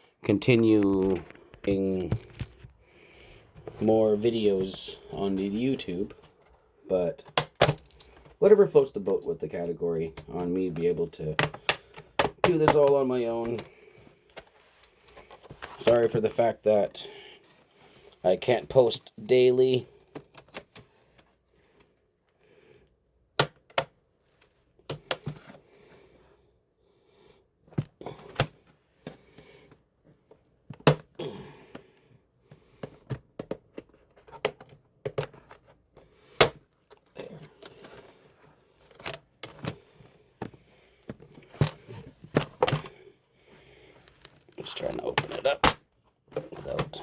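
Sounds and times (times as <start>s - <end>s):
plastic clicks and knocks: 10.1s - 13.7s.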